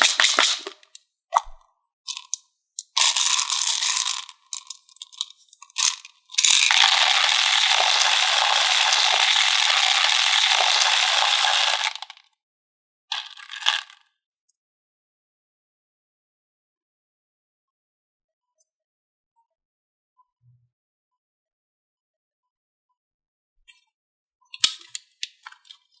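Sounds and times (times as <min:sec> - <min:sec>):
candies rattling into plastic container: 0:00.0 - 0:01.0, 0:02.1 - 0:12.2, 0:13.1 - 0:14.0.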